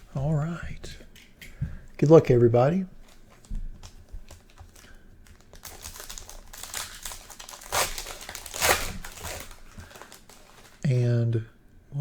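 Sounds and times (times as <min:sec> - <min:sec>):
wrapper tearing and crinkling: 0:03.0 - 0:10.8.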